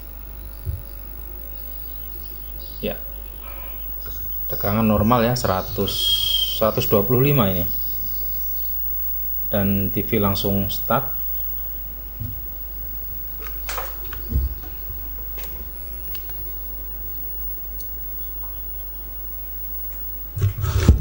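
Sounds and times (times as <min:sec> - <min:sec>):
low electrical hum: 0:00.0 - 0:21.0
soft thump: 0:13.7 - 0:15.7.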